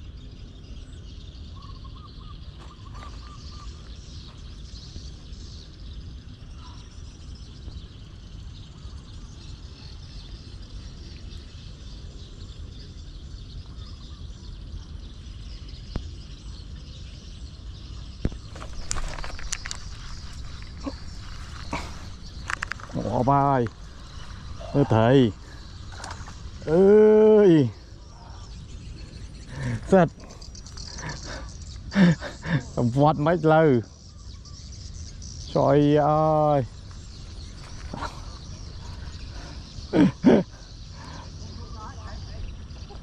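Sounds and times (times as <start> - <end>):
insect and bird chorus: 0.0 - 43.0
sharp clicks and rustling: 18.3 - 23.8.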